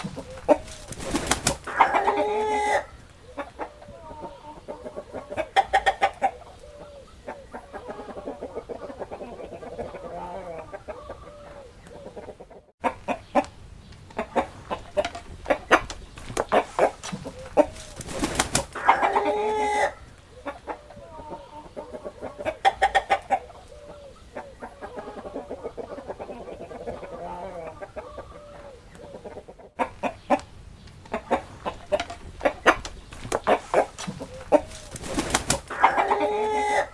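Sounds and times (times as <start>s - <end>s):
chickens clucking: 0.0s - 36.9s
rooster crowing: 1.7s - 2.9s, 18.8s - 20.0s, 35.7s - 36.9s.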